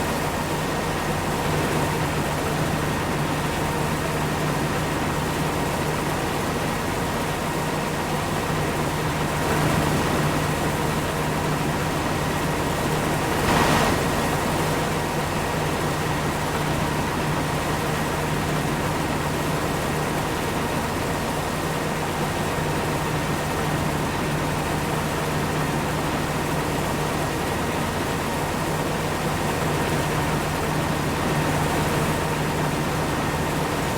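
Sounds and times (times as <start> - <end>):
engine drone: 8.7 - 20.2.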